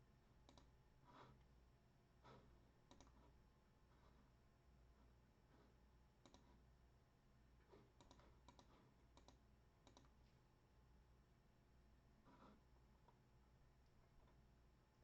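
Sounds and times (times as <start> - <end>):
low steady hum: 0.0 - 15.0
faint sharp clicks: 0.4 - 0.7, 8.0 - 10.2.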